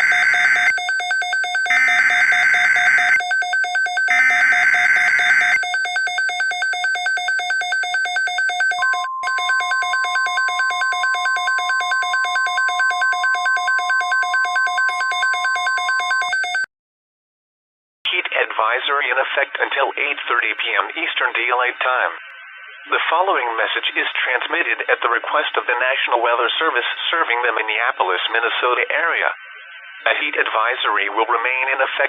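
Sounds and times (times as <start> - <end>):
pulsing buzzy alarm tone: 0.0 - 16.6.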